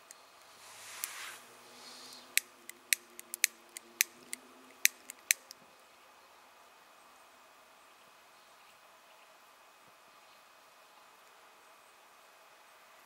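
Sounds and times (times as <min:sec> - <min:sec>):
kindling crackling and popping: 0:02.3 - 0:05.6.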